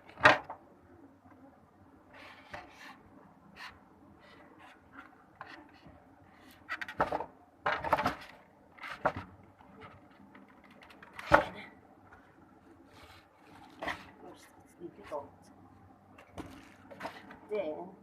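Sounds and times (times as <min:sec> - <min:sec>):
plastic parts knocking and rattling: 0:06.7 - 0:12.3, 0:16.1 - 0:17.4.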